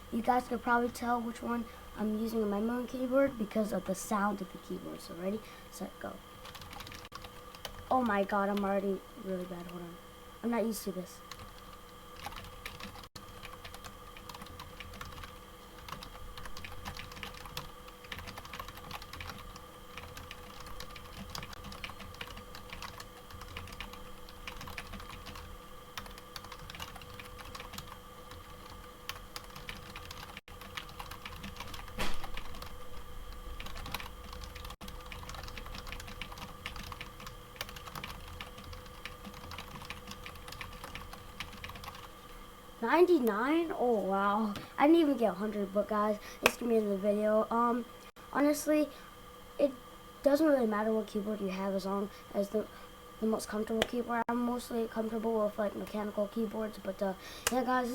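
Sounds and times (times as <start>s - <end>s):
faint steady hum: 0.0s - 57.9s
fast keyboard typing: 6.4s - 7.8s, 11.3s - 32.7s, 33.6s - 42.1s.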